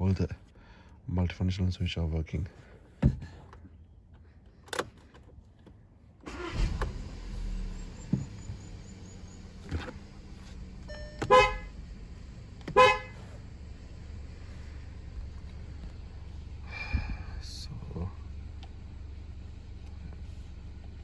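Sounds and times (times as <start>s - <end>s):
car engine starting and idling: 6.2s - 21.0s
car horn toots: 10.9s - 11.8s, 12.6s - 13.4s.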